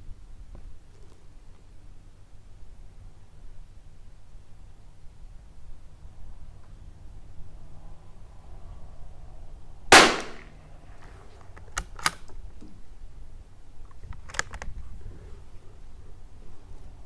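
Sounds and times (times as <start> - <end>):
rifle shot: 9.9 - 10.5
rifle bolt clicks: 10.0 - 10.4, 11.7 - 12.3, 14.2 - 14.7.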